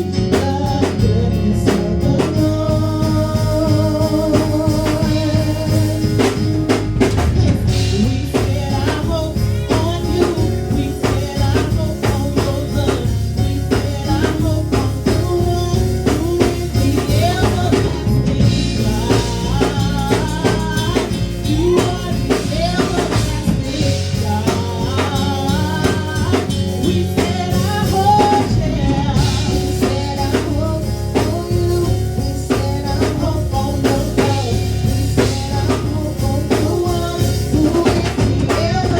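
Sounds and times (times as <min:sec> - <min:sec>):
bass and keyboard notes: 0:00.0 - 0:38.9
drum kit beat: 0:00.0 - 0:38.9
person singing: 0:00.0 - 0:38.9.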